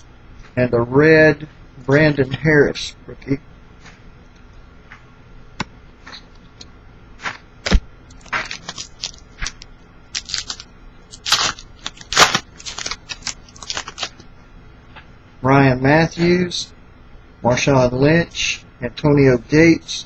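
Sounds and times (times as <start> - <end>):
foil wrapper crinkling: 7.7 - 14.3.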